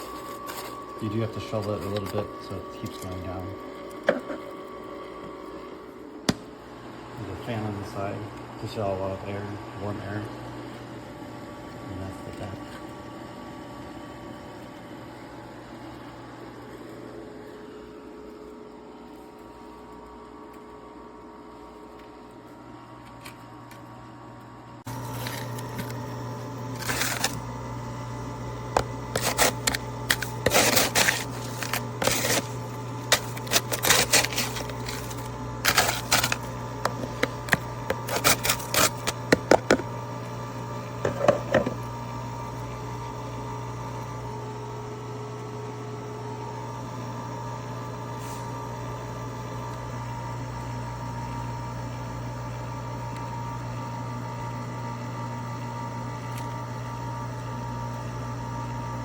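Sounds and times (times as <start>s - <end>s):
ice clicking and clattering: 0.0s - 4.3s, 24.9s - 26.1s, 26.7s - 27.4s, 28.7s - 39.9s
ice maker humming: 0.0s - 59.0s.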